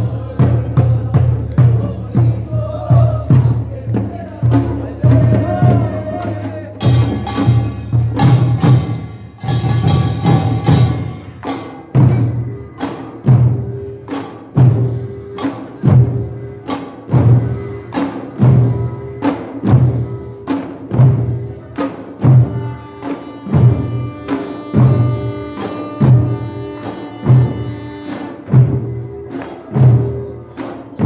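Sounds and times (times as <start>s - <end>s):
drums beating a rhythm: 0.0s - 31.0s
metal gongs clashing: 6.8s - 12.4s.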